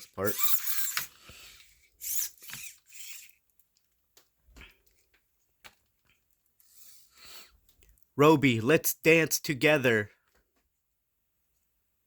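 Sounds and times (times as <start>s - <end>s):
servo motors whirring: 0.0s - 3.4s.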